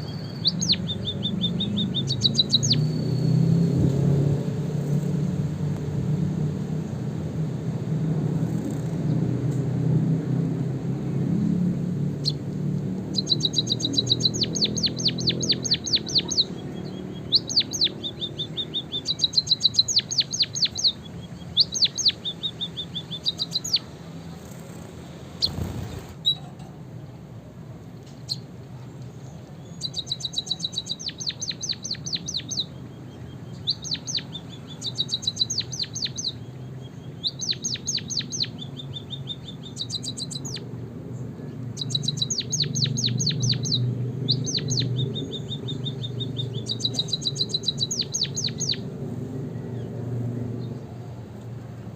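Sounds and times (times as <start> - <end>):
bird chirping and whistling: 0.0 - 3.8, 13.1 - 23.9, 25.4 - 26.4, 29.6 - 40.6, 41.8 - 48.8.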